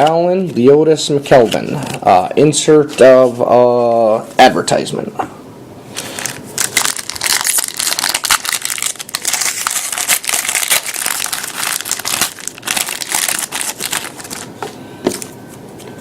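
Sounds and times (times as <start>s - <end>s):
plastic foil wrapper crinkling: 6.0s - 14.6s.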